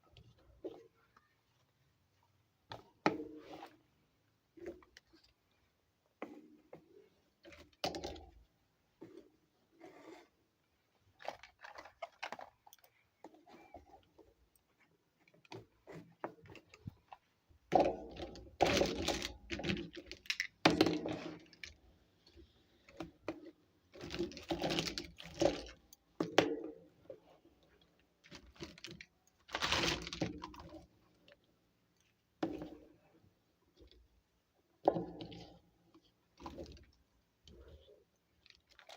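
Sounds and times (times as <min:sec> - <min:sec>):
plastic toy pieces rattling: 0:18.7 - 0:20.6.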